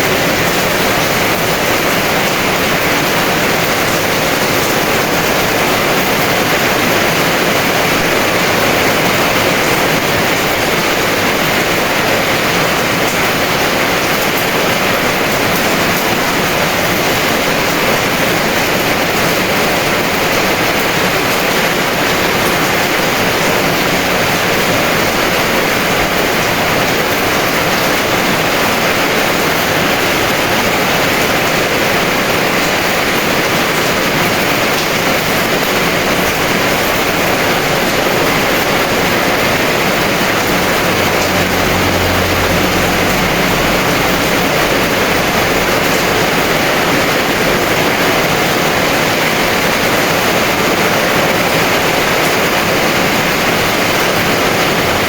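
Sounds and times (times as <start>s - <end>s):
heavy rain pouring: 0.0s - 55.0s
low rumble: 38.4s - 47.8s.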